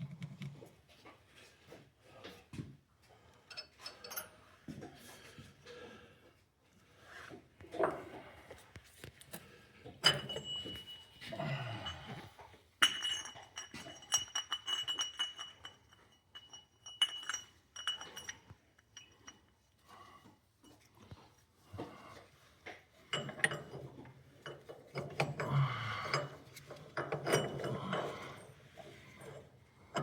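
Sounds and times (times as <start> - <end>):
metal parts clinking: 12.8 - 19.3.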